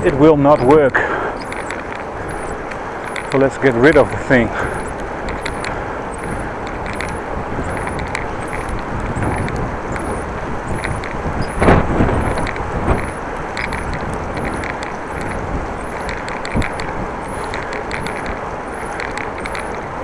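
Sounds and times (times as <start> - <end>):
faint rhythmic ticking: 0.0 - 20.0
wind rushing over microphone: 0.0 - 20.0.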